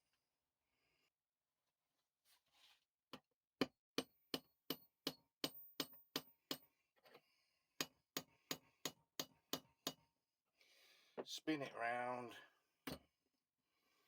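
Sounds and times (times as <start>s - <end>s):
hammer tapping metal pin: 12.8s - 13.0s.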